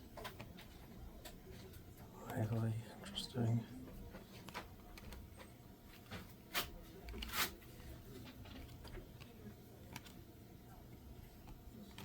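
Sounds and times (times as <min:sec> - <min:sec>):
cards handled with light clicks: 0:03.8 - 0:10.3.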